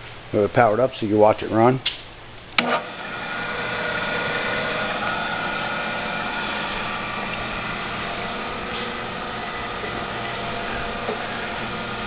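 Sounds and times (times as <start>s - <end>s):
drill press motor whirring: 2.6s - 12.0s.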